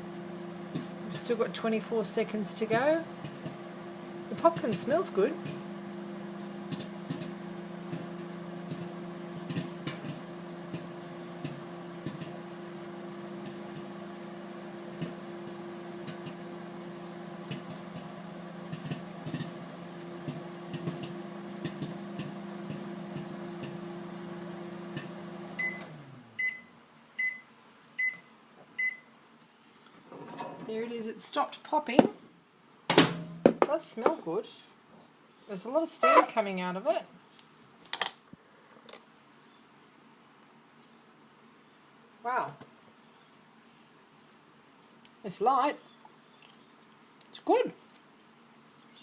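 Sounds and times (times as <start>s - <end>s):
microwave oven humming: 0.0s - 27.4s
popcorn popping: 3.1s - 12.4s, 17.3s - 23.8s.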